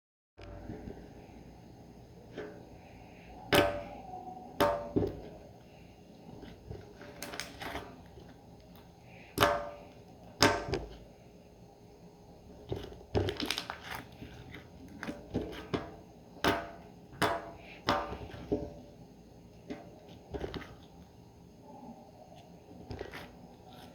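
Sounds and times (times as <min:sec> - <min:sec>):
slime squishing: 0:02.2 - 0:11.2, 0:12.5 - 0:18.9, 0:22.1 - 0:23.9.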